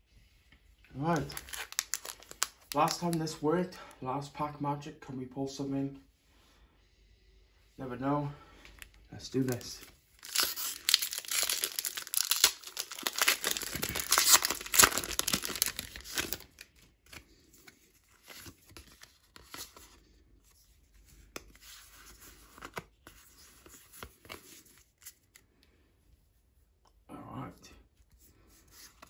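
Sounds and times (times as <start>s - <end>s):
foil wrapper tearing and crinkling: 1.1s - 3.2s, 9.4s - 17.2s.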